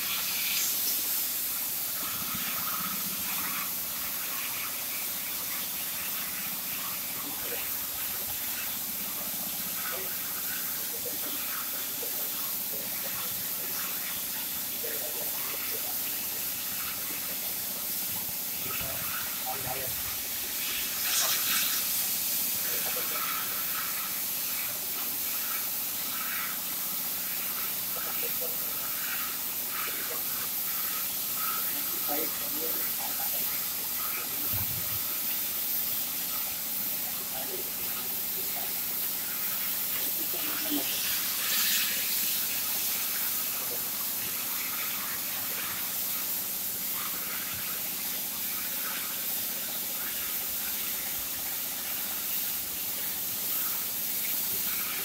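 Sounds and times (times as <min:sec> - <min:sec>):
cutting torch hissing: 0:00.0 - 0:55.0.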